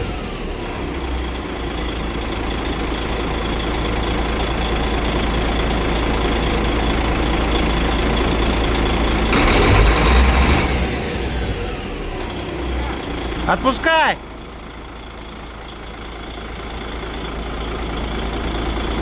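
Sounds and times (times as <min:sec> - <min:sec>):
diesel truck engine at raised revs: 0:00.0 - 0:19.0
loud hiss: 0:09.4 - 0:11.0.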